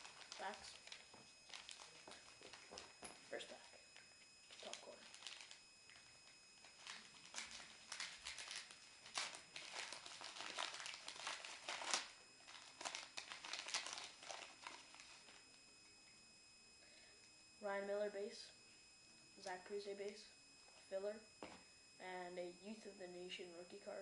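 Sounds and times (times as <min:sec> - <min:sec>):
wrapper crinkling: 0:00.0 - 0:03.6, 0:04.4 - 0:15.5.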